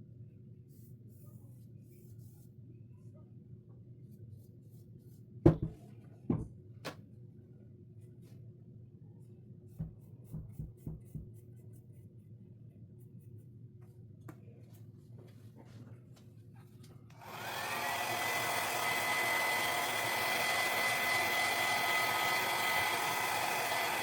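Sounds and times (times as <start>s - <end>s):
hard objects knocking on surface: 5.5s - 6.5s.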